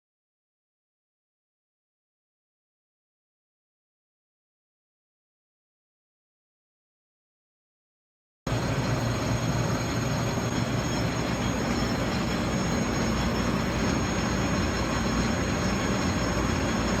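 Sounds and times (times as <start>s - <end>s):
high-pitched whine: 8.5s - 17.0s
metal lathe running: 8.5s - 17.0s.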